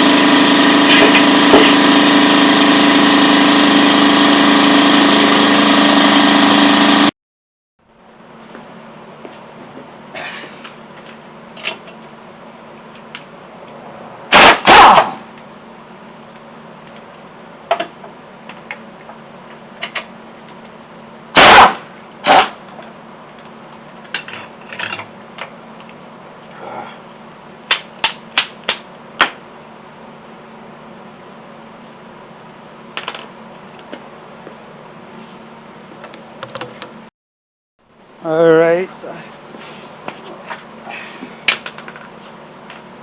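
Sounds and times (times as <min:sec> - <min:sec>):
impact wrench bursts: 0:14.3 - 0:15.3, 0:21.3 - 0:22.6.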